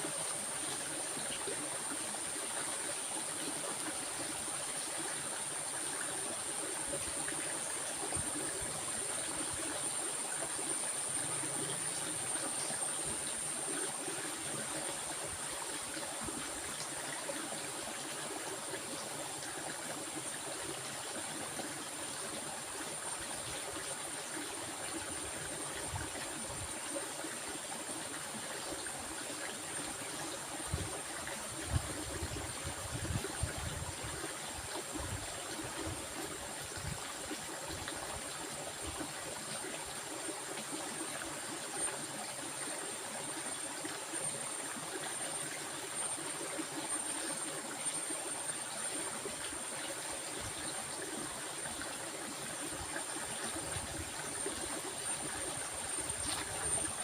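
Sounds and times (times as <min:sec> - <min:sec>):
stream water flowing: 0:00.0 - 0:57.0.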